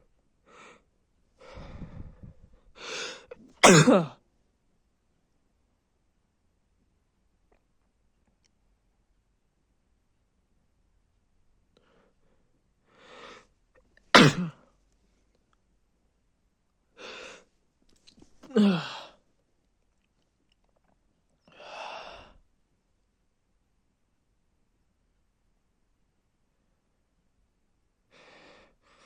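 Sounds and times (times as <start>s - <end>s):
breathy sigh: 1.4s - 3.3s, 18.5s - 19.2s
man drawing breath: 1.4s - 3.3s
man sneezing: 3.0s - 4.2s, 14.1s - 14.6s, 18.5s - 19.1s.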